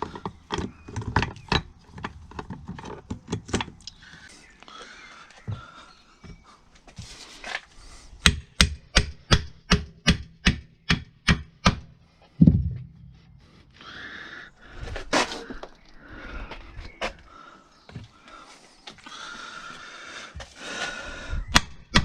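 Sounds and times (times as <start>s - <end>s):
heavy thump: 12.4s - 13.5s.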